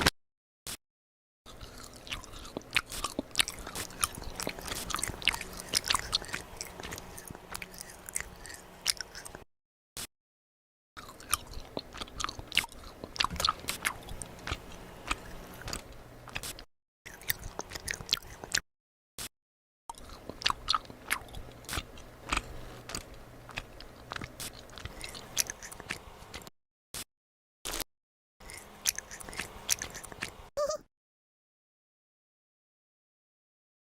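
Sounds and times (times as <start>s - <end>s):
crunchy bites and chewing: 1.5s - 9.4s, 11.0s - 18.6s, 19.9s - 26.5s, 28.4s - 30.3s.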